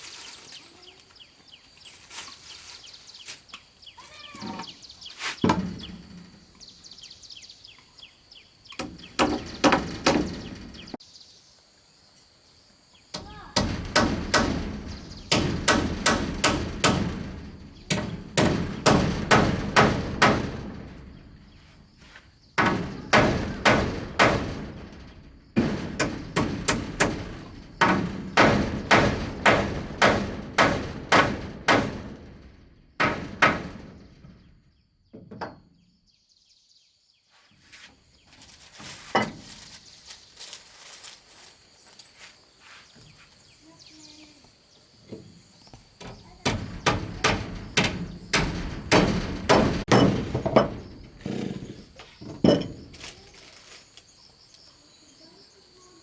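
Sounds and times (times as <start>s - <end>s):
hand tool striking wood: 8.8s - 11.0s, 13.2s - 20.8s, 22.1s - 24.7s, 25.6s - 32.1s, 46.0s - 53.2s.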